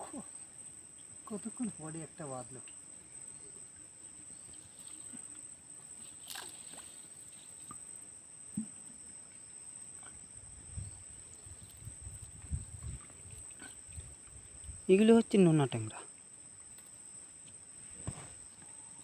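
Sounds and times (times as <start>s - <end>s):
crickets buzzing: 0.0s - 19.0s.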